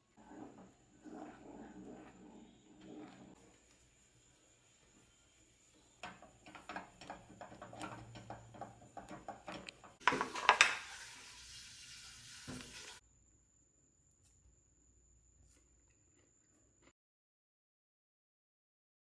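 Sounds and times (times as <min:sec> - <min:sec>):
utensils clinking against dishes: 0:06.0 - 0:11.0.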